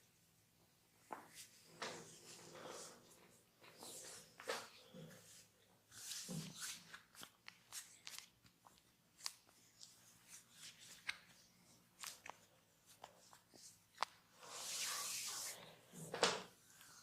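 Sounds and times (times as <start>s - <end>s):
hands crackling over skin and hair: 6.0s - 11.4s, 12.0s - 14.2s.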